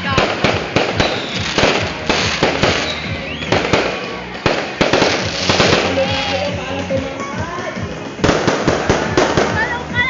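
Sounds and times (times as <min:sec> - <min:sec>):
fireworks bangs: 0:00.0 - 0:06.6, 0:08.0 - 0:10.0.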